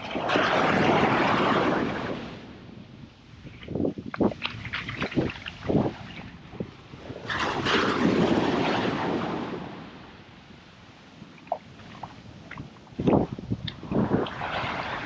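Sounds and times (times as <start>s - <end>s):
wave breaking on beach: 0.0s - 2.8s, 6.9s - 15.0s.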